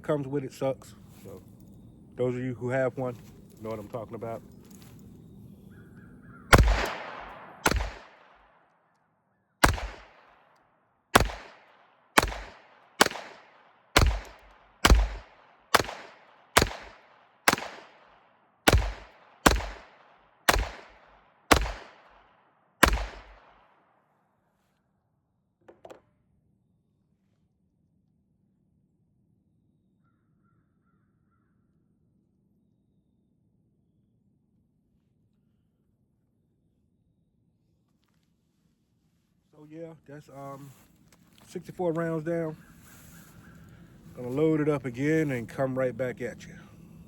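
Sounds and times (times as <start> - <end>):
pistol shots: 6.5 - 8.6, 9.6 - 10.3, 11.1 - 22.2, 22.8 - 23.6.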